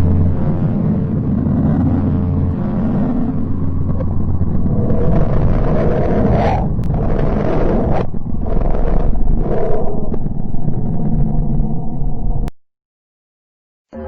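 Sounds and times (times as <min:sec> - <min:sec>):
deep noisy drone: 0:00.0 - 0:12.5
low hum: 0:00.0 - 0:12.5.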